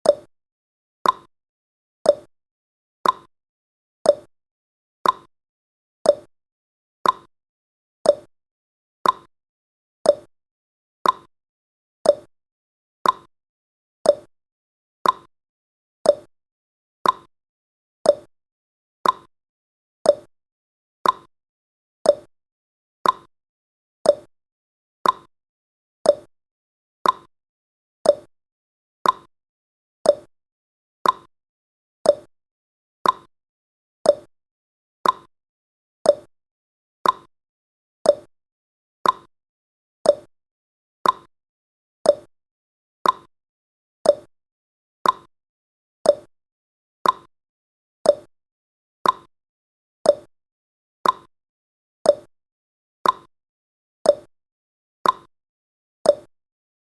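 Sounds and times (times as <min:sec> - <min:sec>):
clock ticking: 0:33.0 - 0:33.3, 0:35.0 - 0:35.3, 0:39.0 - 0:39.3, 0:41.0 - 0:41.3, 0:43.0 - 0:43.3, 0:45.0 - 0:45.3, 0:47.0 - 0:47.3, 0:49.0 - 0:49.3, 0:51.0 - 0:51.3.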